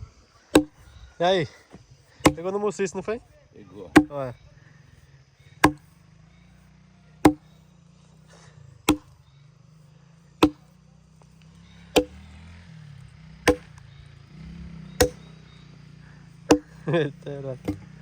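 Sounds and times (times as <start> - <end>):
axe chopping a log: 0.5 - 0.9, 2.2 - 2.5, 3.9 - 4.2, 5.6 - 5.9, 7.2 - 7.5, 8.9 - 9.2, 10.4 - 10.7, 12.0 - 12.2, 13.4 - 13.8, 15.0 - 15.2, 16.5 - 16.8, 17.6 - 18.0.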